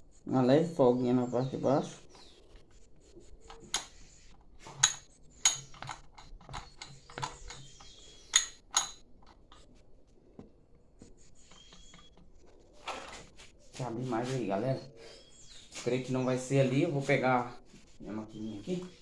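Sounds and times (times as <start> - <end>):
metal tools clinking: 4.7 - 9.6.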